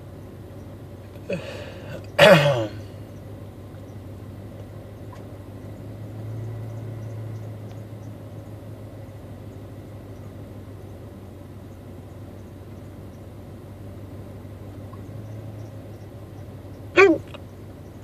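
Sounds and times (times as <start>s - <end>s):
man hiccupping: 1.3s - 2.9s, 17.0s - 17.4s.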